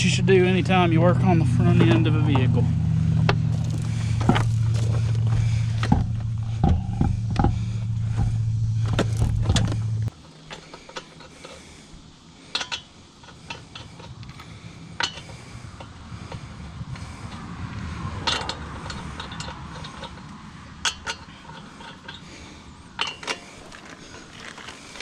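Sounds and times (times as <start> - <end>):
machine hum: 0.0 - 10.2
clanks and knocks of wheel work: 0.0 - 11.6, 12.5 - 25.0
metallic clicks and clanks: 12.5 - 14.4, 15.0 - 17.4, 18.2 - 25.0.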